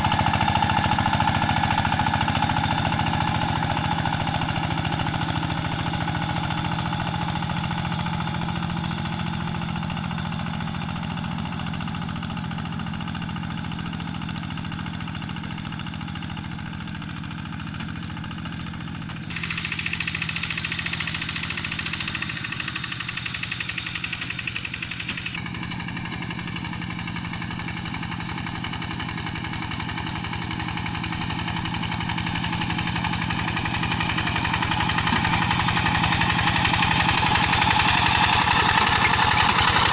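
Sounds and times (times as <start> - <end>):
diesel engine running under load: 0.0 - 39.9.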